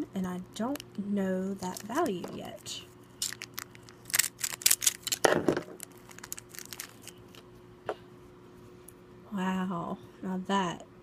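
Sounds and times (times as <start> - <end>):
wrapper crinkling: 0.6 - 7.4.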